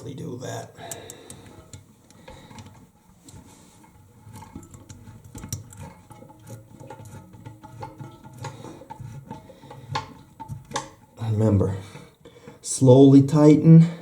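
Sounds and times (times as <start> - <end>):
toilet rocking onto seal: 4.2 - 13.5.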